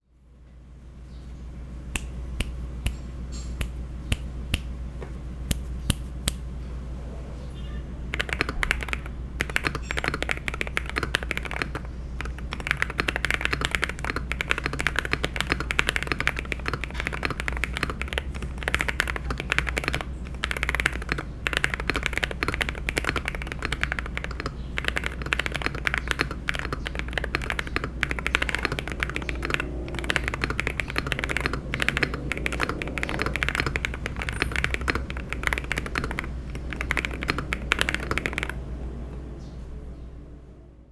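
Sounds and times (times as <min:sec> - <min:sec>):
mechanical keyboard typing: 0:08.1 - 0:38.6.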